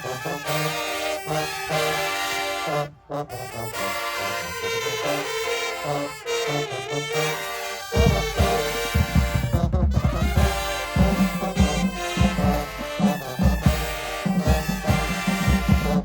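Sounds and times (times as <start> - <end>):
marching band brass playing: 0.0 - 16.0.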